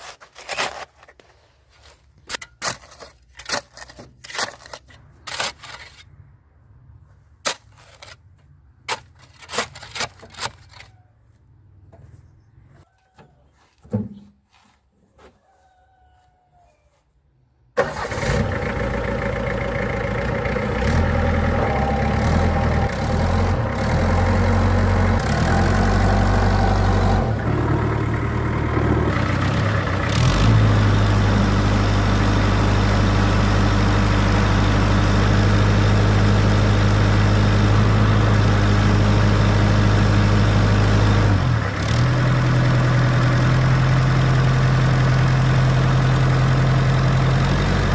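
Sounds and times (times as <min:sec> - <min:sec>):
truck engine starting and running: 0:17.8 - 0:47.9.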